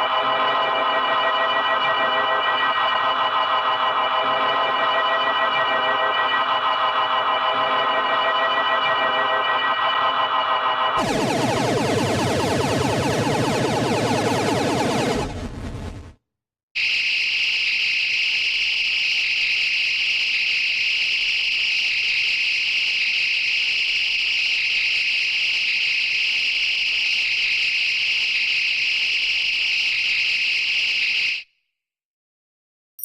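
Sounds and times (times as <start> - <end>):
high-pitched laser beam tone: 0.1 - 15.6.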